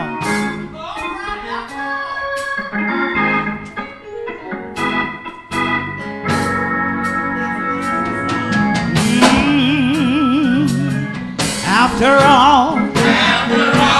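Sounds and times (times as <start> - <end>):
organ playing sustained chords: 1.6 - 13.8
sharp percussive hits: 9.0 - 10.2.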